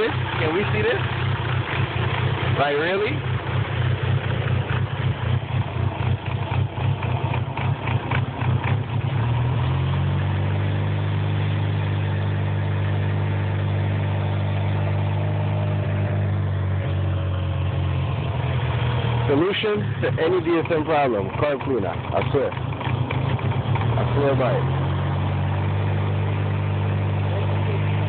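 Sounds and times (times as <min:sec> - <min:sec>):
car engine idling unevenly: 0:00.0 - 0:28.0.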